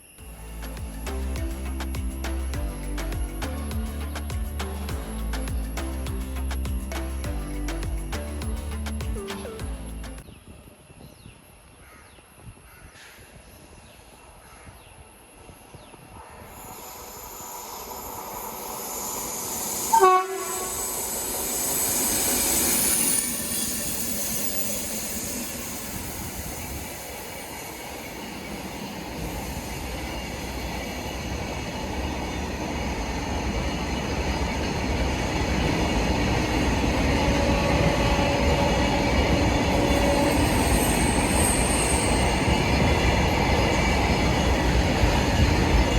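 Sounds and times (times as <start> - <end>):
train rumbling: 0.0 - 10.2, 16.2 - 45.9
loud train horn blast: 19.8 - 21.3, 37.1 - 41.6.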